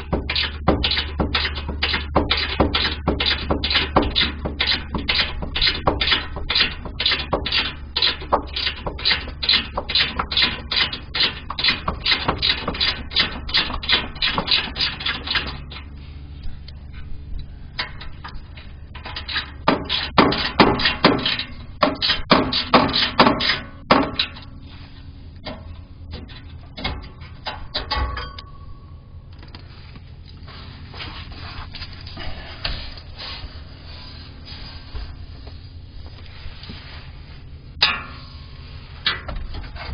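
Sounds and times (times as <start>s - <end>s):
metallic knocks: 25.5s - 28.6s.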